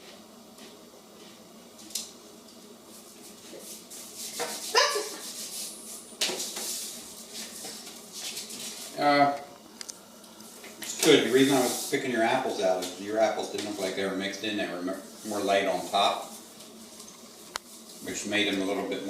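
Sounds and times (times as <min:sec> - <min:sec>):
dog barking: 0:04.7 - 0:05.2.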